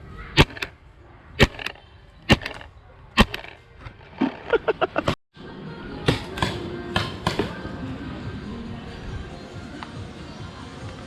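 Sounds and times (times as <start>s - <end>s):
paintball marker shots: 0.4s - 0.8s, 1.4s - 3.6s
paintball smacking: 0.4s - 0.8s, 1.4s - 3.6s.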